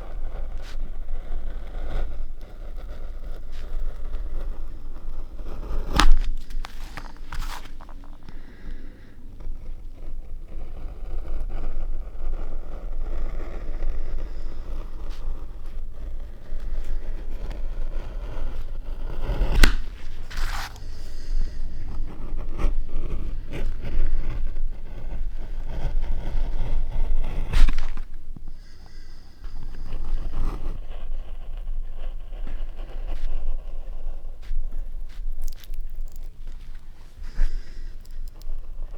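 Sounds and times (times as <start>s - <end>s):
steady low hum: 0.0s - 38.9s
hand tools scraping linoleum: 14.4s - 26.2s.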